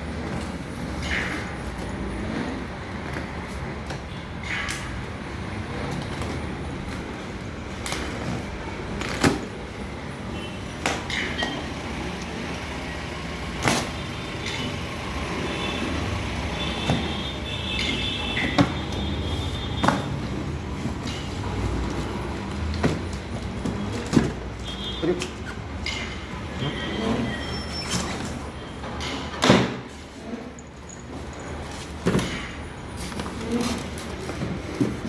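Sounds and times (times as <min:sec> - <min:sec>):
brief squeaks: 0:26.6 - 0:28.3.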